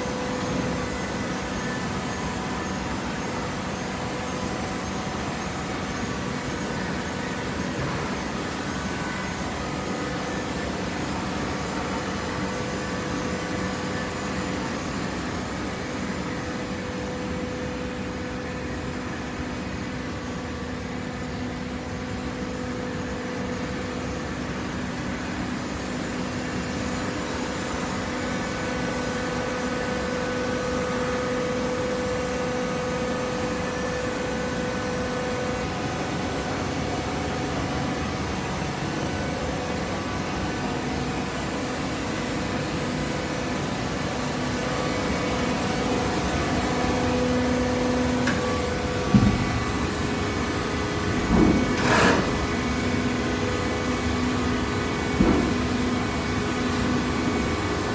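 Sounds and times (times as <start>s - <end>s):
hydraulic pump humming: 27.7s - 57.9s.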